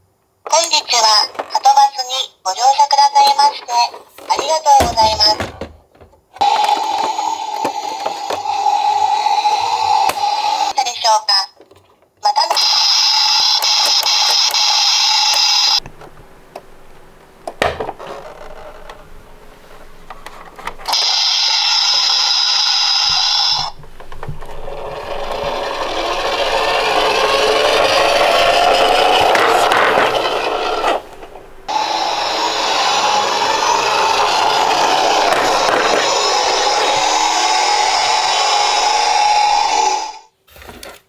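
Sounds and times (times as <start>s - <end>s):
toy clicking: 12.4s - 15.8s, 20.9s - 40.1s
whirring rub rising in pitch: 21.0s - 40.2s.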